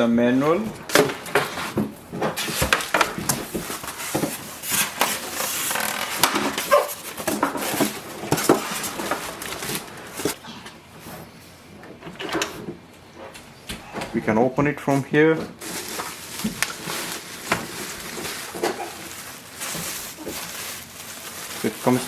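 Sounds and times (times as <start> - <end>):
packaging rustling: 0.5 - 10.4, 15.6 - 22.0.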